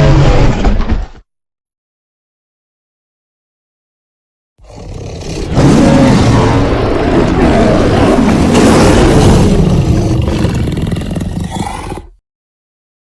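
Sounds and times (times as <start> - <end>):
big cat roar: 4.6 - 12.2.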